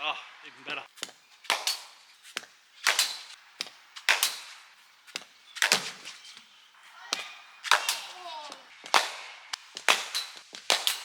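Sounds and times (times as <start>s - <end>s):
cricket bat striking ball: 1.0s - 4.6s, 5.2s - 6.2s, 7.1s - 11.0s.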